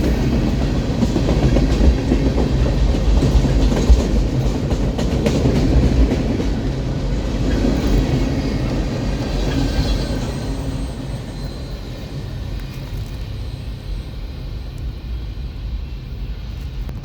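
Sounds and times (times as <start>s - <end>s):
freight train rumbling: 0.0s - 17.0s
faint wheel squeal: 9.4s - 15.0s.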